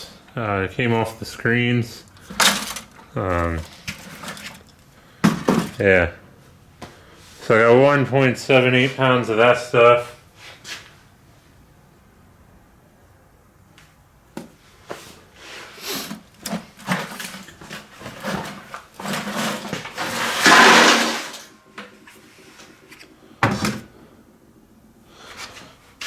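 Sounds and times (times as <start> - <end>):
laptop parts clattering in a bucket: 2.0 - 5.9, 16.0 - 23.9.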